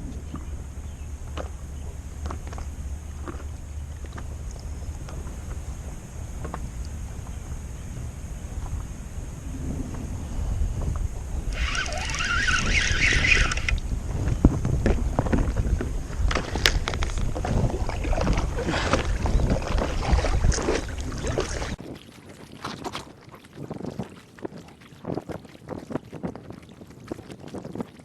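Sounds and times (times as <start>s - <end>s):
water knocking against boat hull: 0.0s - 9.0s, 13.8s - 21.8s
wind buffeting microphone: 0.0s - 28.0s.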